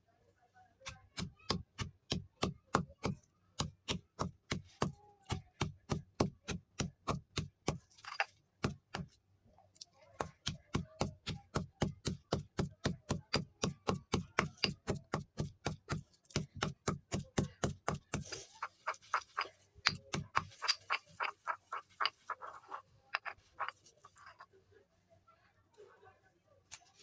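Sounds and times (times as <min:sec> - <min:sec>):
chalk sticks being crushed: 0:15.9 - 0:24.5.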